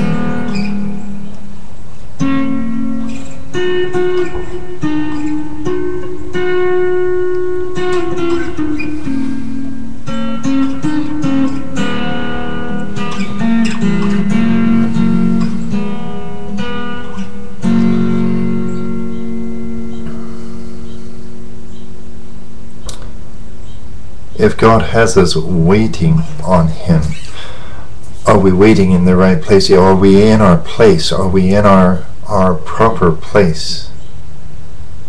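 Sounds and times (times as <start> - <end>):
acoustic guitar strumming chords: 0.0 - 35.0.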